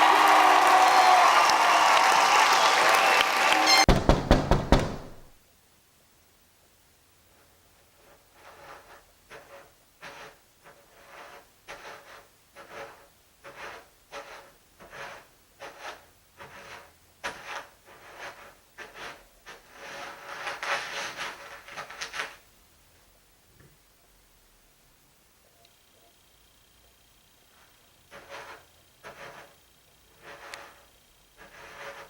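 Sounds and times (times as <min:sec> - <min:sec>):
scraping strokes: 0:07.4 - 0:22.4, 0:27.6 - 0:29.5, 0:30.1 - 0:32.0.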